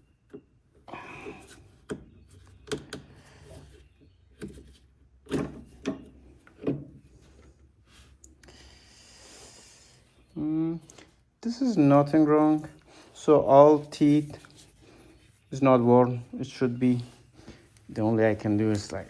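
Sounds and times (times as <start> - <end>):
clicks and knocks of parts: 1.4 - 3.2.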